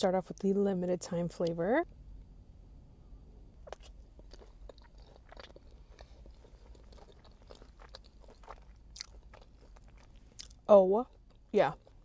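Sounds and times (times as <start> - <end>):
chewing crunches: 3.6 - 12.0.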